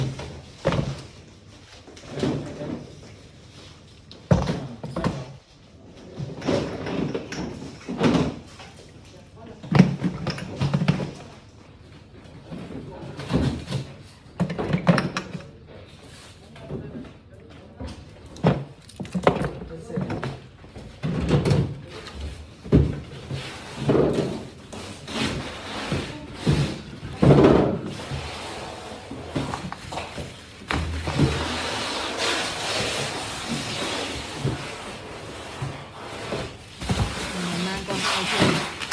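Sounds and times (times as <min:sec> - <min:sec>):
doors and lids knocking shut: 0:36.8 - 0:38.8.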